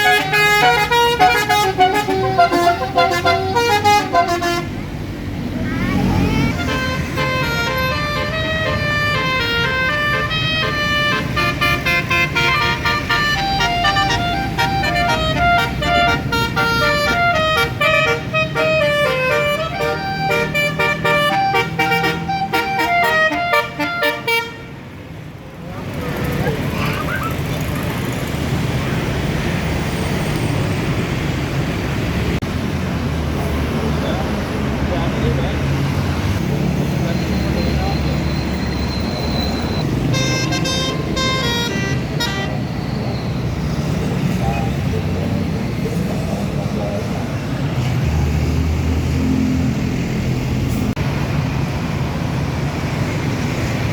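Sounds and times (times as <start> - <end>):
bus horn playing melody: 0.0 - 4.9, 6.2 - 24.9, 39.9 - 42.7
bus engine rumble: 0.0 - 53.9.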